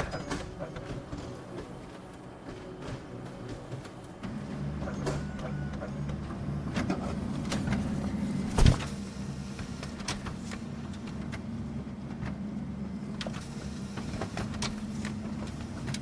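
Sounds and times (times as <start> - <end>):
office printer running: 0.0 - 16.0
printer thump: 8.5 - 8.9.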